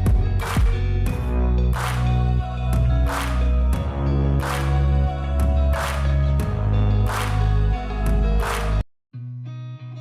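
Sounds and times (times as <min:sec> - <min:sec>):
instrumental pop music: 0:00.0 - 0:10.0.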